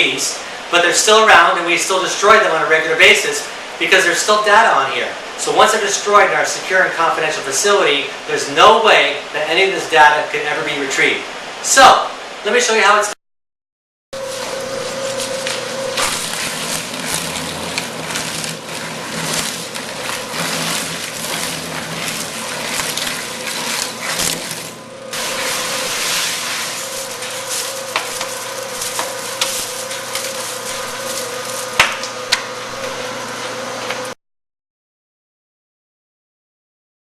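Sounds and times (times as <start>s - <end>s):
shredder crunching disks: 14.2s - 34.1s
shredder motor hum: 14.2s - 34.2s.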